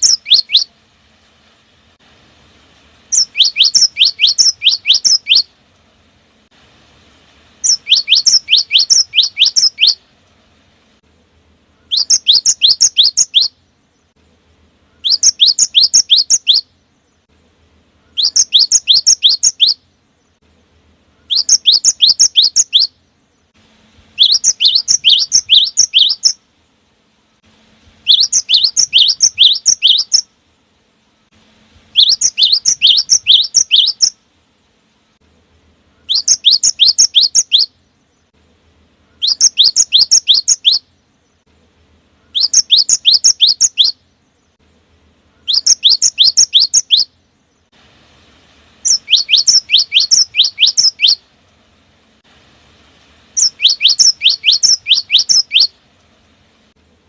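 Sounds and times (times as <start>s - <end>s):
bird singing sharp whistled notes: 0.0s - 0.7s, 3.1s - 5.5s, 7.6s - 10.1s, 11.8s - 13.6s, 14.9s - 16.7s, 18.0s - 20.3s, 21.2s - 23.0s, 24.2s - 26.4s, 28.0s - 30.3s, 31.9s - 34.2s, 35.9s - 38.3s, 39.0s - 41.4s, 42.2s - 44.0s, 45.3s - 47.2s, 48.8s - 51.2s, 53.4s - 55.8s.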